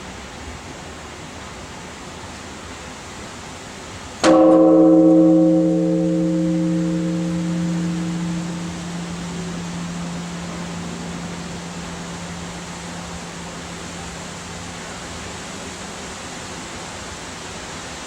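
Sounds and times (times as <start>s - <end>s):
large temple bell ringing: 4.2s - 16.4s.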